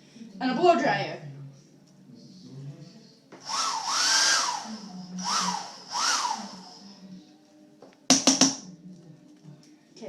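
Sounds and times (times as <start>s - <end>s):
blow dryer air and motor whine: 3.4s - 7.0s.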